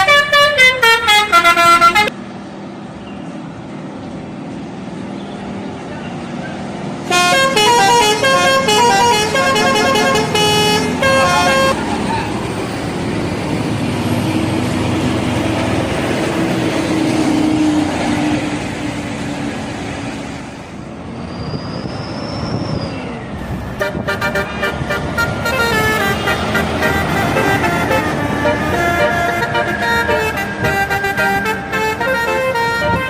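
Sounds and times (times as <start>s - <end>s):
musical bus horn tune: 0.0s - 2.1s, 7.1s - 11.8s, 23.7s - 33.0s
bus engine and road noise: 0.0s - 33.0s.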